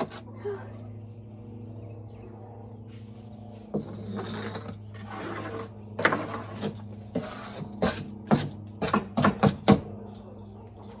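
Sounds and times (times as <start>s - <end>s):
steady low hum: 0.0s - 11.0s
tool scraping wooden boards: 3.7s - 9.6s.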